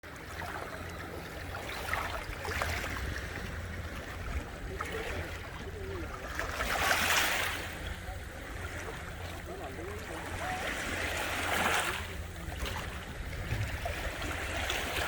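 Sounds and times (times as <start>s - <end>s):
water splashing around kayak: 0.0s - 15.0s
steady low rumble: 12.1s - 15.0s.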